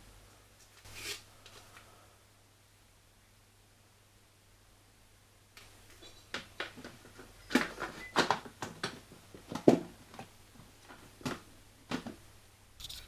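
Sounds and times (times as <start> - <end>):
plastic parts clicking and knocking: 6.3 - 12.2.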